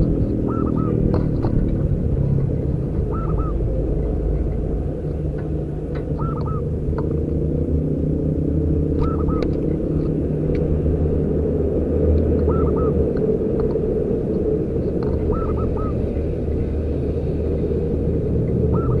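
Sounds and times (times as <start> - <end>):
dove calling: 0.0 - 1.7, 2.6 - 4.3, 6.0 - 6.8, 8.9 - 9.9, 12.3 - 13.1, 15.0 - 16.7, 18.6 - 19.0
steady low rumble: 0.0 - 19.0.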